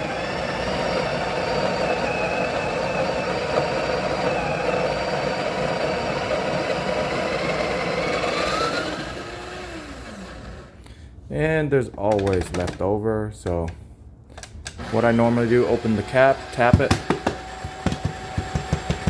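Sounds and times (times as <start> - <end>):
coffee grinder whirring: 0.0 - 10.8, 14.8 - 19.0.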